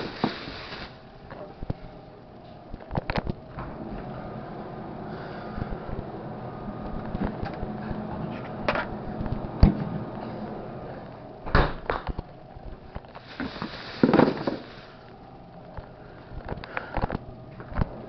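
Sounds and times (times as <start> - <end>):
steady low hum: 0.0 - 18.0
crinkly rustle: 12.6 - 17.2.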